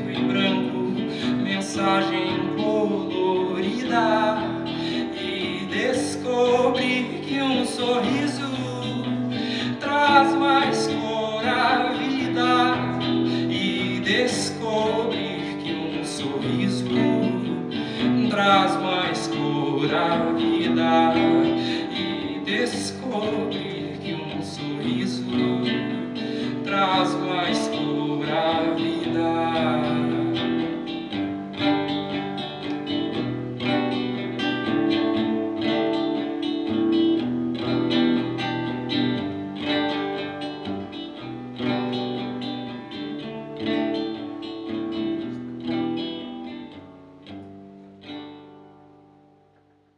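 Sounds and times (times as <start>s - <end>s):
acoustic guitar chords: 0.0s - 49.9s.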